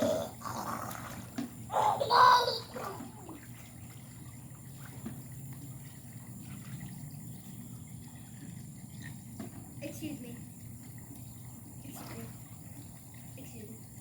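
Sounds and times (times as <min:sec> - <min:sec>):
loud rough burp: 0:00.0 - 0:01.2
water trickling in a pool: 0:00.0 - 0:14.0.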